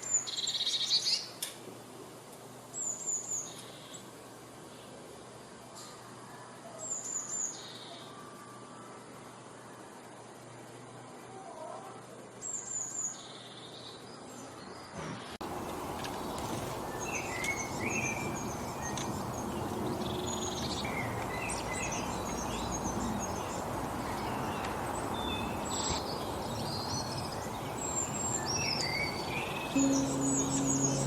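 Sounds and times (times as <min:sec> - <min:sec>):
steady outdoor hiss: 0:00.0 - 0:31.0
small songbirds chirping: 0:02.7 - 0:05.0, 0:12.4 - 0:31.0.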